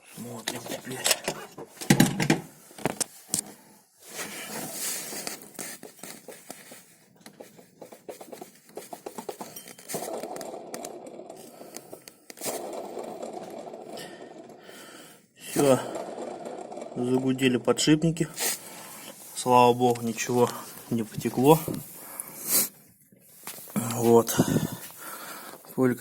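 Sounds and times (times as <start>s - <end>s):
handling clicks and scratching: 2.8s - 14.6s
pulley bearing droning whir: 10.0s - 14.9s, 15.6s - 17.4s.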